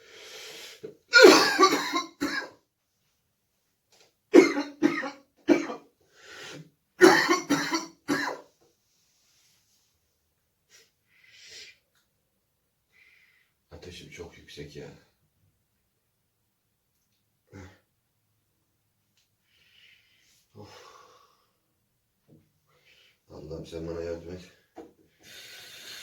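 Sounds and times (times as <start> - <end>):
man coughing rapidly: 1.1 - 2.6, 4.4 - 5.9, 7.0 - 8.4.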